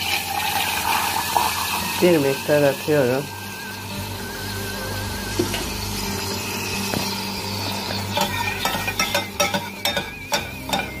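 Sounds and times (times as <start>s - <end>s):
butter sizzling in a pan: 0.0s - 11.0s
spoon clinking against pan: 8.1s - 11.0s.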